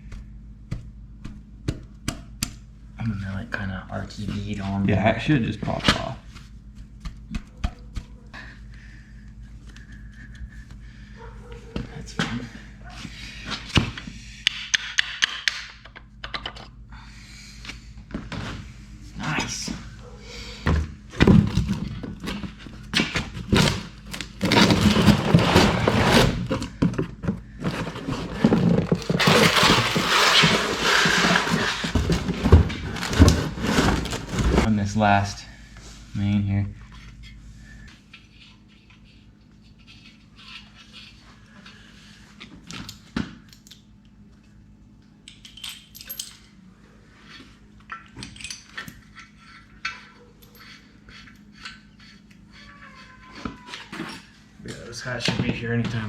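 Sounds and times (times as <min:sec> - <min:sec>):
metal tools clinking and scraping: 0:45.3 - 0:46.6, 0:47.3 - 0:51.9.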